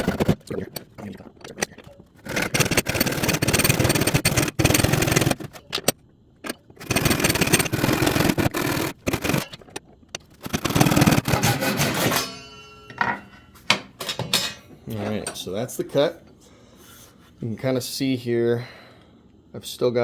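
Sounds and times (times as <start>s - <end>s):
hand saw cutting wood: 0.0s - 0.4s, 2.2s - 5.7s, 6.8s - 12.3s.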